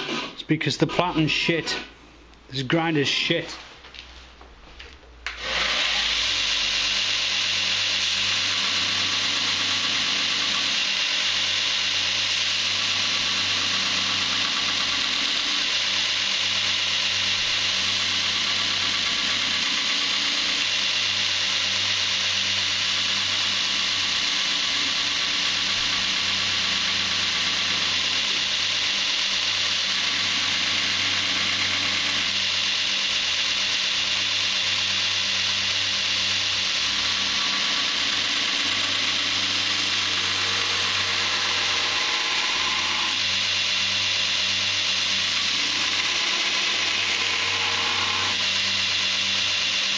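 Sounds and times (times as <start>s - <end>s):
motor hum: 5.2s - 49.9s
steel grinding on belt: 35.9s - 49.9s.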